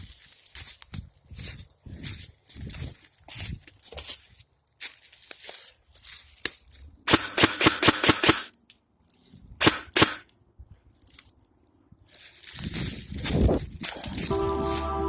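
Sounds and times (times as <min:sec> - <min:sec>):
airsoft gun shots: 0:07.1 - 0:08.5, 0:09.6 - 0:10.2.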